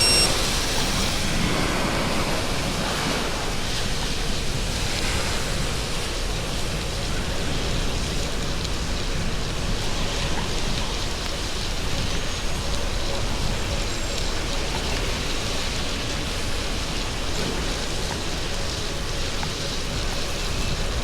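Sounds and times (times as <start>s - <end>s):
steady rain hiss: 0.2s - 21.0s.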